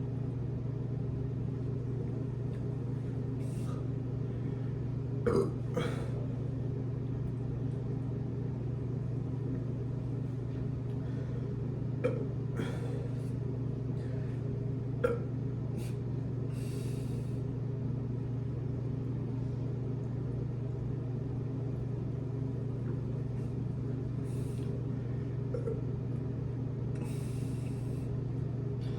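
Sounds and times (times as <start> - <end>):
steady low hum: 0.0 - 28.9
quiet burps: 5.2 - 6.3, 12.0 - 13.1, 15.0 - 15.4, 25.5 - 26.0.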